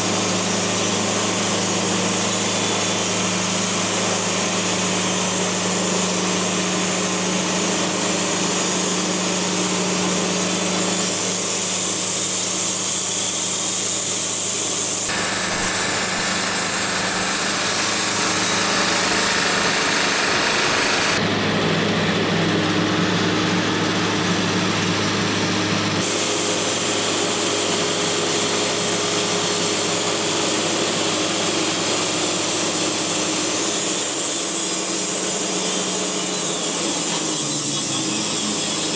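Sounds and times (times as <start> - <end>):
sawmill engine humming: 0.1 - 25.0, 26.0 - 38.9
band blade cutting log: 15.1 - 21.2.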